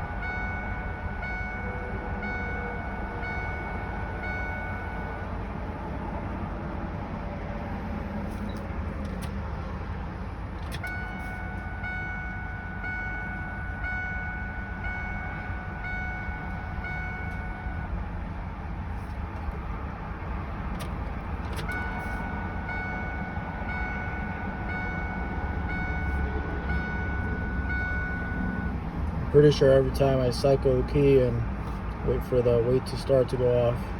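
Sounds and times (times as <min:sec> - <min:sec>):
warning chime: 0:00.0 - 0:05.4, 0:10.8 - 0:18.0, 0:21.6 - 0:30.4
diesel engine idling: 0:00.0 - 0:33.9.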